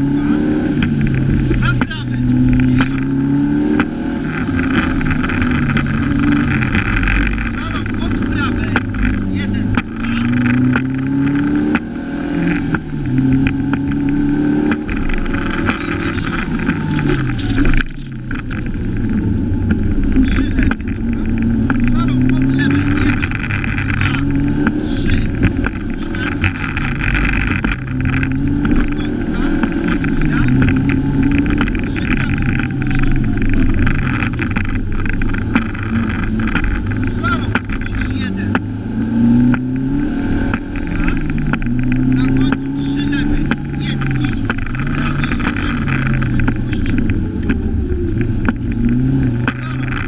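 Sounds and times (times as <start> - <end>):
car knocks and rattles: 0.0 - 50.0
rally car engine revving: 0.0 - 50.0
road and tyre noise: 0.0 - 50.0.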